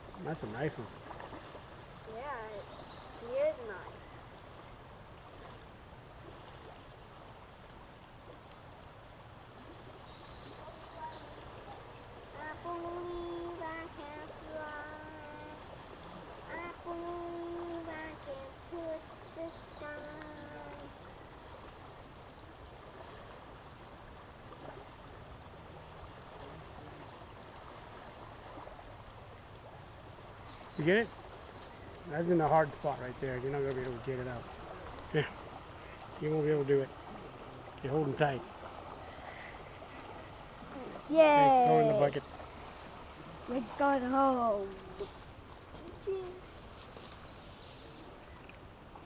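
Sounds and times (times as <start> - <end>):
flowing water: 0.0 - 49.0
faint high chirping calls: 2.1 - 4.2, 9.9 - 12.2, 18.8 - 21.6, 30.4 - 32.0
bird chirping: 19.2 - 20.5, 30.5 - 31.8.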